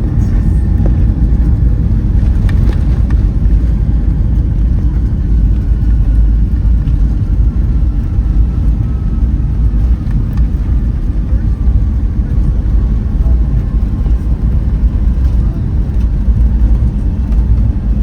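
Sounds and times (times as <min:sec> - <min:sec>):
aircraft cabin engine rumble: 0:00.0 - 0:18.0.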